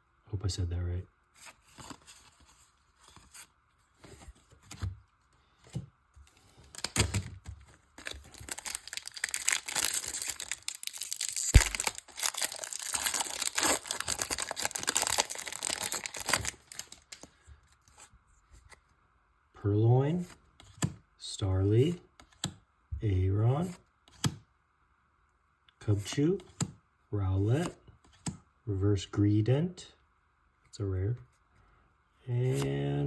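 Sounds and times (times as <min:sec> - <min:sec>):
handling noises: 0:05.6 - 0:17.3
foil wrapper tearing and crinkling: 0:06.7 - 0:07.3, 0:08.0 - 0:17.3.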